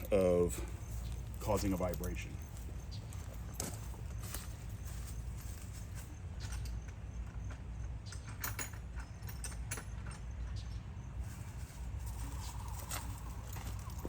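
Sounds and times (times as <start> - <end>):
hand tools clicking and clinking: 0.0 - 10.7, 11.3 - 14.0
steady low rumble: 10.2 - 14.0.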